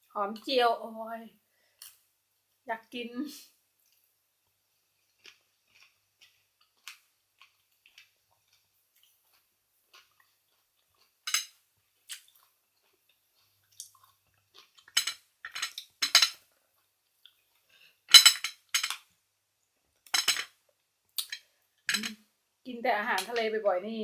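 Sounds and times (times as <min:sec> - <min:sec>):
tableware clinking on a plate: 0:11.3 - 0:11.6, 0:14.9 - 0:16.4, 0:18.1 - 0:19.0, 0:20.1 - 0:20.6, 0:21.3 - 0:22.2.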